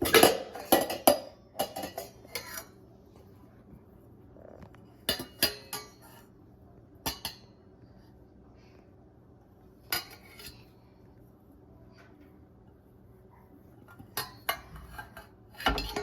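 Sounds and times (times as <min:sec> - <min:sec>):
metal pots clanking: 0:00.0 - 0:02.7, 0:13.9 - 0:16.0.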